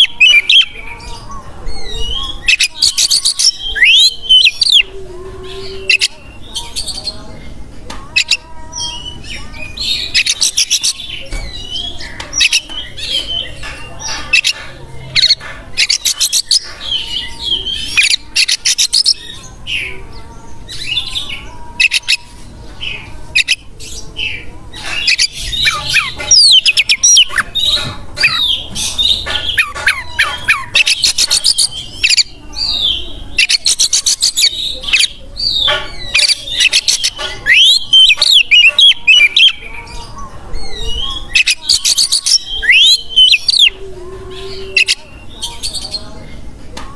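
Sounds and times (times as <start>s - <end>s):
bird singing varied song: 0.0s - 46.9s.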